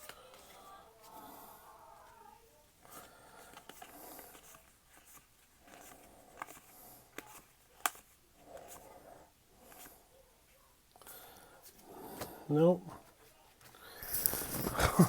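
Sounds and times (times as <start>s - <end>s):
wrappers and cards rustling: 0.0s - 10.0s, 13.0s - 15.0s.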